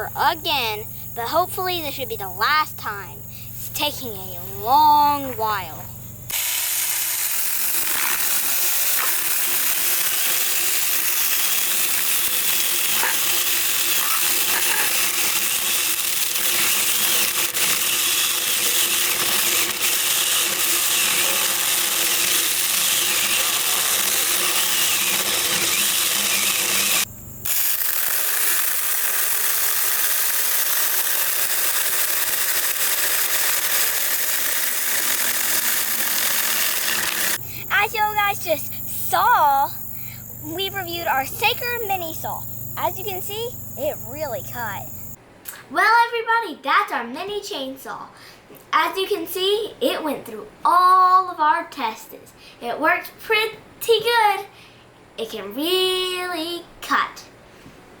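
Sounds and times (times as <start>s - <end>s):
chainsaw cutting through log: 6.3s - 37.5s.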